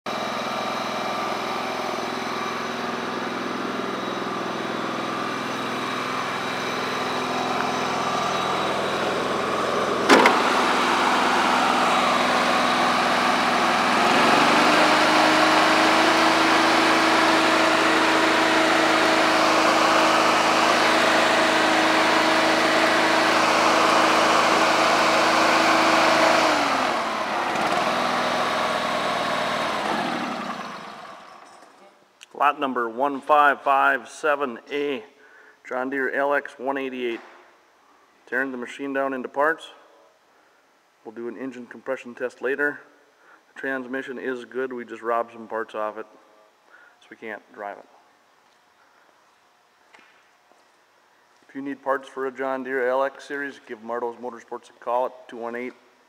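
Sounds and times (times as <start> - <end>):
lawn tractor engine running: 0.1 - 31.4.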